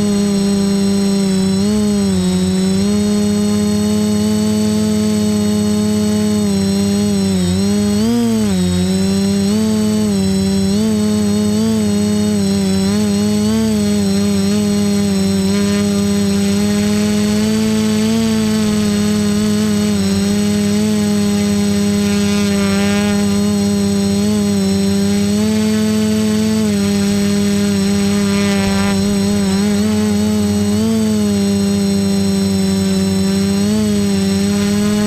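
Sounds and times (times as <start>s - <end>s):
quadcopter propellers buzzing: 0.0s - 35.0s.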